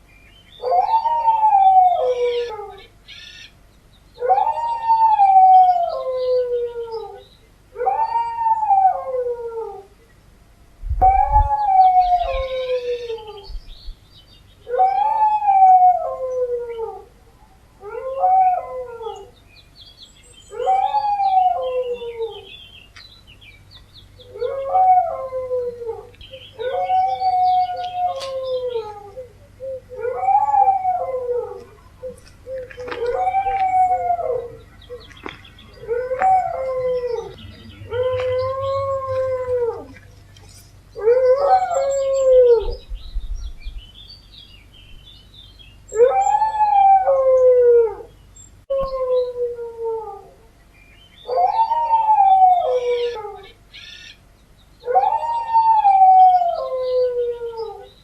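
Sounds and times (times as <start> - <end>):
dogs howling: 0.6 - 2.9, 4.2 - 9.9, 11.0 - 13.5, 14.6 - 17.2, 17.8 - 19.4, 20.5 - 22.5, 24.2 - 40.4, 41.0 - 42.9, 45.9 - 48.1, 48.7 - 50.5, 51.2 - 53.6, 54.8 - 58.0.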